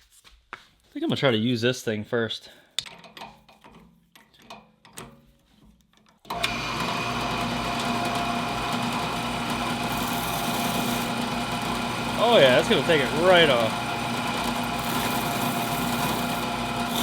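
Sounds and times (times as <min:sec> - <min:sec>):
drill press motor running: 0:06.3 - 0:17.0.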